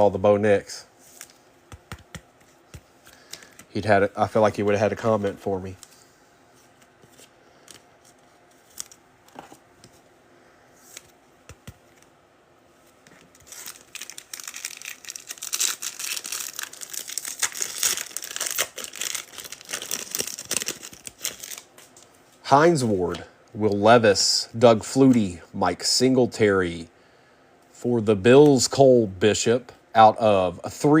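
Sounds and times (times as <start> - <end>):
foil wrapper tearing and crinkling: 13.4 - 21.7.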